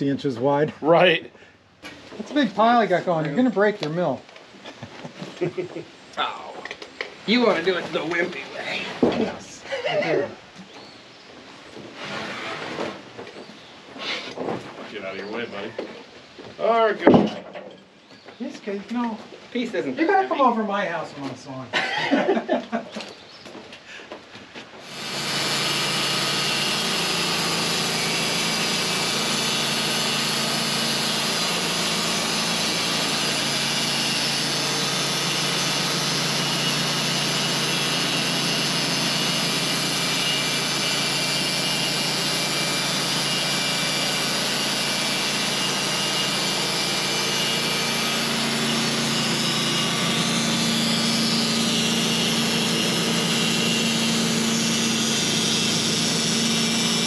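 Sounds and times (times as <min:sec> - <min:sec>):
saw blade cutting log: 0:07.3 - 0:09.4, 0:11.9 - 0:13.0, 0:24.8 - 0:57.0
sawmill engine at full throttle: 0:07.3 - 0:09.5, 0:24.8 - 0:57.0.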